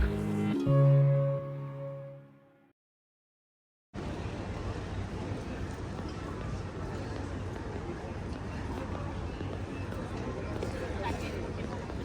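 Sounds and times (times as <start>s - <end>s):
background music held chord: 0.0s - 2.7s.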